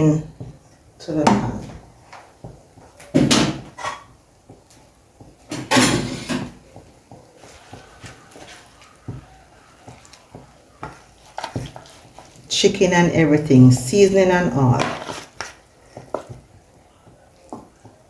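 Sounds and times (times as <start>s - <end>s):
spoon and bowl knocking pan: 5.2s - 12.0s.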